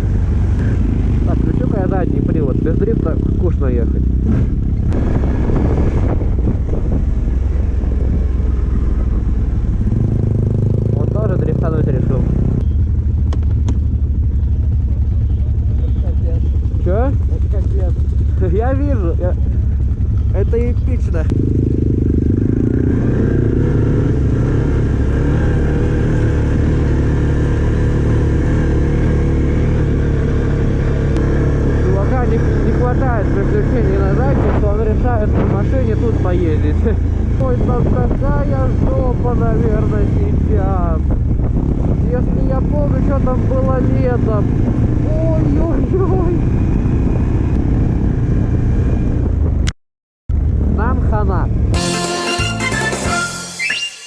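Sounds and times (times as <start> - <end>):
quad bike engine revving: 0.0 - 49.7
wind buffeting microphone: 4.2 - 11.2, 32.7 - 49.7.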